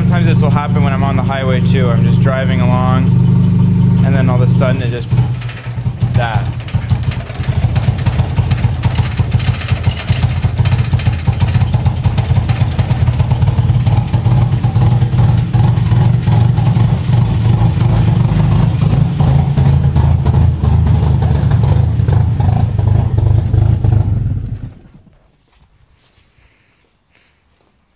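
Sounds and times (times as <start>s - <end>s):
rotary engine idling rough: 0.0s - 25.1s.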